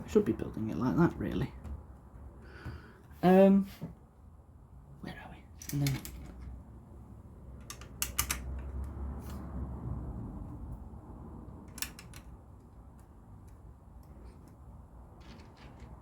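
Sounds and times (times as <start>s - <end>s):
plastic bricks clicking together: 7.6s - 8.7s, 11.7s - 12.4s, 15.2s - 16.0s.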